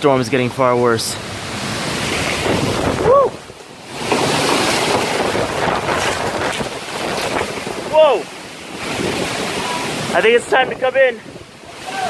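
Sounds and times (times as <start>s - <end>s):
strong wind buffeting microphone: 1.4s - 12.0s
person calling out: 11.8s - 12.0s.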